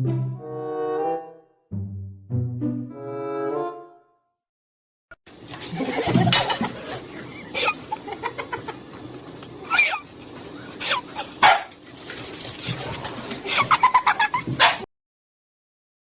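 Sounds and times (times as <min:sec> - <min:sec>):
dog barking and yipping: 0:11.4 - 0:11.8, 0:14.5 - 0:14.9.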